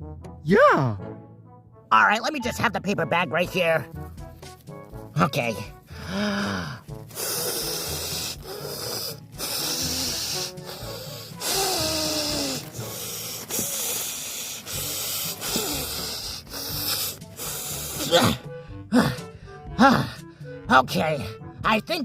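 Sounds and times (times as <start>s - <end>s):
breathing into paper bag: 5.9s - 18.1s.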